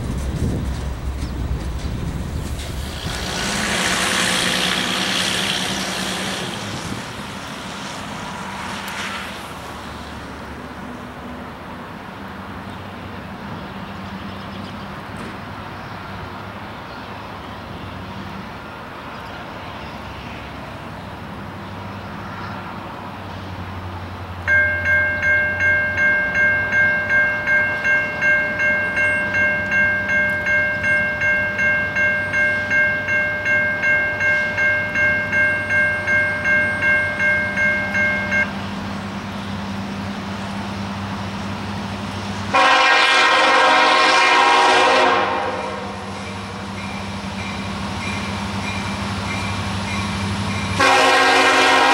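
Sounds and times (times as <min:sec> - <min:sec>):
diesel locomotive running: 0:00.0 - 0:51.9
railroad crossing bell ringing: 0:24.4 - 0:38.7, 0:42.6 - 0:51.9
locomotive air horn: 0:42.5 - 0:46.2, 0:50.8 - 0:51.9.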